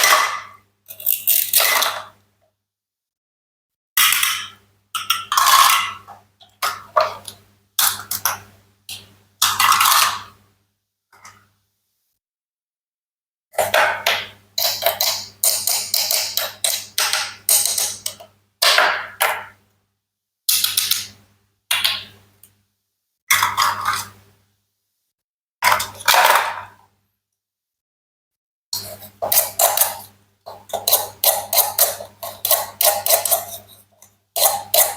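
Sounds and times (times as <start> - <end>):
toy knife cutting toy food: 0.9 - 1.7, 28.8 - 33.8, 34.4 - 34.9.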